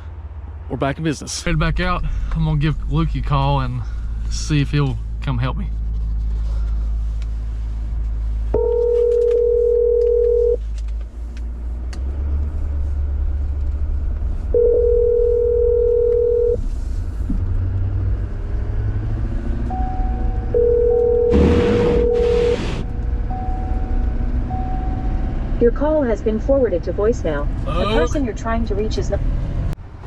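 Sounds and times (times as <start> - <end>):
steady low rumble: 0.0 - 9.3
telephone ringback tone: 8.6 - 10.6, 14.6 - 16.6, 19.8 - 22.6.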